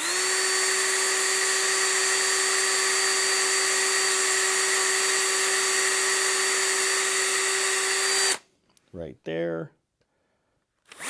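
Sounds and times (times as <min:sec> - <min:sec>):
electric drill motor whining: 0:00.0 - 0:08.4.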